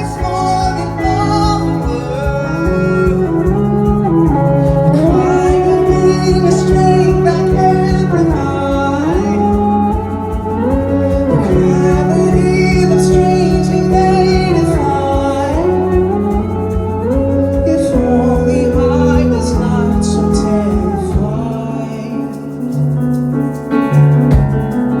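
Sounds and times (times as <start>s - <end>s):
person singing held gliding line: 0.0s - 22.9s
bass: 0.0s - 25.0s
keyboard: 0.0s - 25.0s
steady drum beat: 0.0s - 25.0s.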